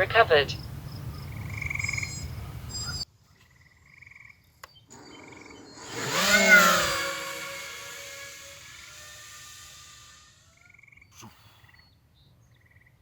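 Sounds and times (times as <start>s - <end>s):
pitch-bending swell: 4.9s - 10.4s.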